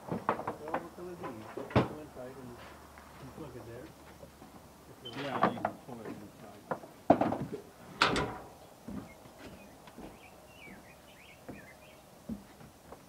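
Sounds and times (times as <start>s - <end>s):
sharp wooden knocks: 6.6s - 9.1s
bird chirping faintly: 8.5s - 12.5s.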